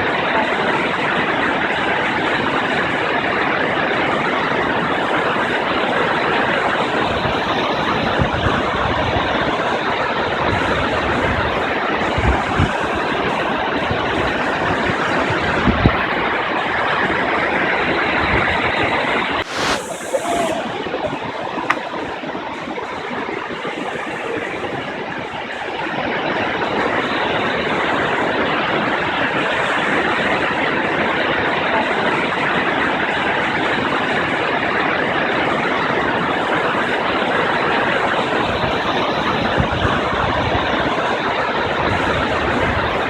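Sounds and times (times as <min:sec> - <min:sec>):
wind rumble on microphone: 0:00.0 - 0:43.0
waterfall roaring: 0:19.4 - 0:28.3.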